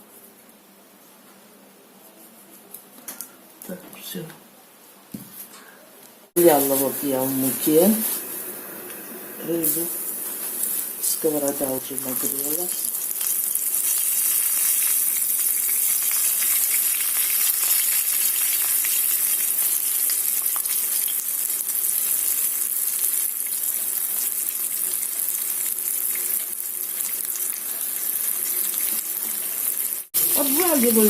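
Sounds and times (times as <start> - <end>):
fish sizzling in a frying pan: 9.4 - 31.0.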